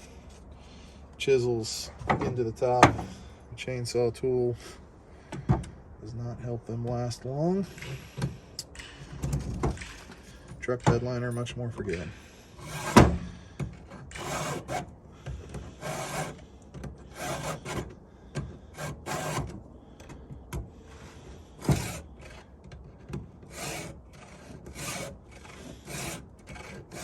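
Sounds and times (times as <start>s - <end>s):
file rasping on chainsaw chain: 14.0s - 14.9s, 15.7s - 17.9s, 18.7s - 19.5s, 21.6s - 22.5s, 23.5s - 27.0s.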